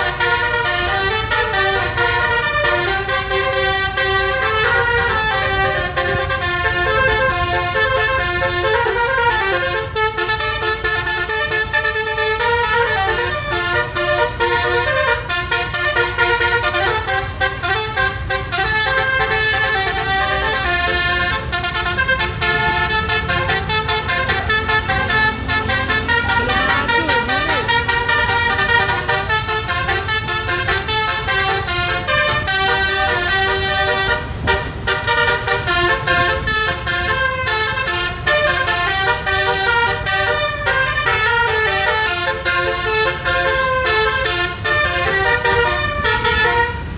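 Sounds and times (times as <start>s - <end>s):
bus musical horn playing tune: 0.0s - 46.9s
steady low rumble: 19.6s - 37.5s.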